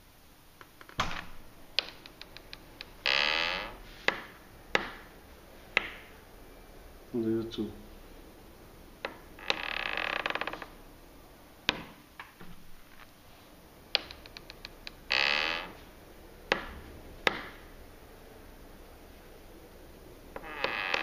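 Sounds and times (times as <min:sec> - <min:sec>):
door hinge squealing: 0:02.2 - 0:03.8, 0:09.1 - 0:10.8, 0:15.1 - 0:15.8, 0:20.4 - 0:21.0.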